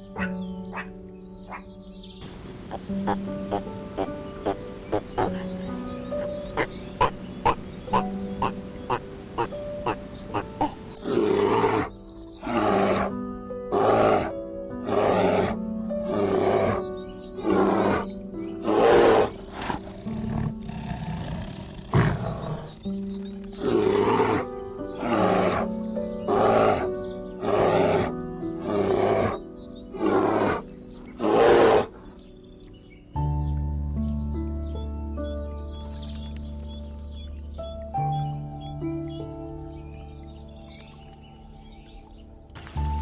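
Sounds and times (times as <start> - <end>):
background music: 0.0 - 43.0
rasping animal roars: 10.6 - 22.8, 23.6 - 25.7, 26.3 - 31.9.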